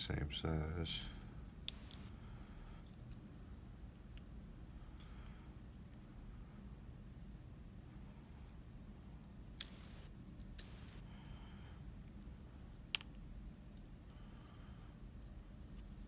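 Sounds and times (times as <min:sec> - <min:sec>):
small metal parts clicking: 0:09.6 - 0:11.1.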